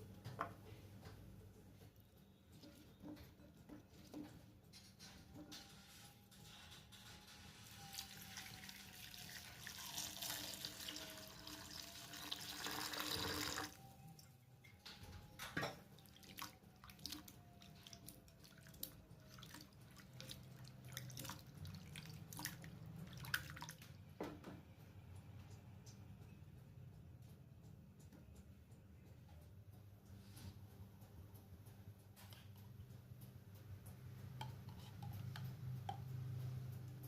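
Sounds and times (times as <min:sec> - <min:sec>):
water running from a tap: 0:07.9 - 0:13.8
water dripping: 0:07.9 - 0:24.1.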